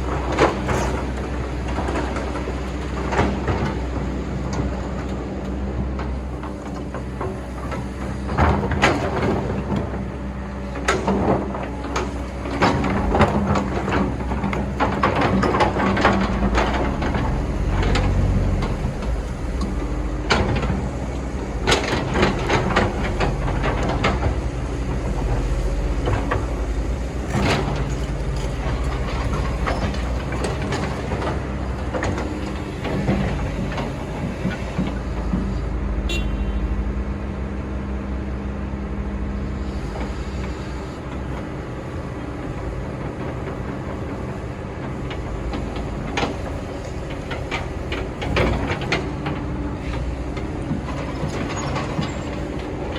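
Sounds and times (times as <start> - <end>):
excavator diesel engine running: 0.0 - 52.9
excavator bucket knocks and clanks: 10.8 - 35.5, 44.9 - 52.9.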